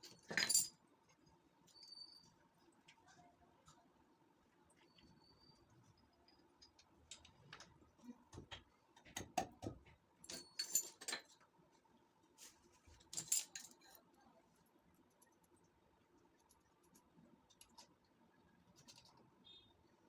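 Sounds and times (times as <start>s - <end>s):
small metal tools clinking: 0.0s - 0.8s, 10.2s - 11.4s, 13.0s - 14.0s.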